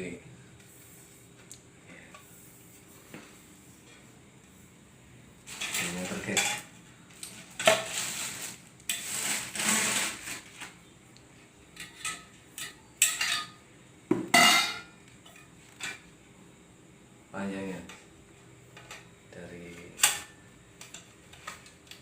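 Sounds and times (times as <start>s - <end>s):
metal tubes clinking and scraping: 5.5s - 10.4s, 11.8s - 13.6s.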